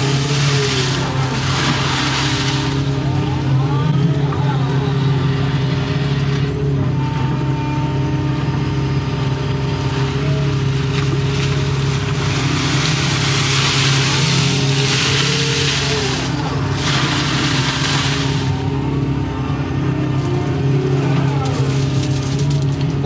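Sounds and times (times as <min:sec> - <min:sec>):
excavator diesel engine running: 0:00.0 - 0:23.0
hydraulic whine: 0:00.0 - 0:23.0
hissing rush: 0:11.2 - 0:19.0.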